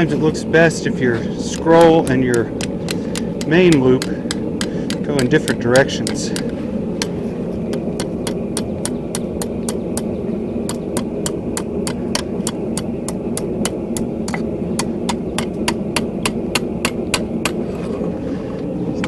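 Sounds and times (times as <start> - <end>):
low hum: 0.0 - 19.0
hammer striking steel on anvil: 1.4 - 10.1.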